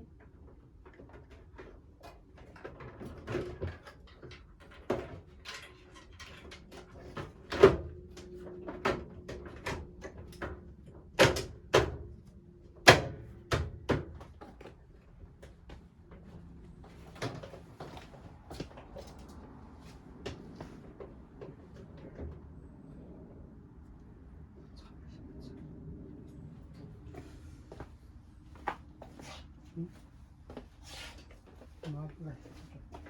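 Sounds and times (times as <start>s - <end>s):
tools knocking on washing machine: 11.2s - 12.1s, 12.8s - 14.3s.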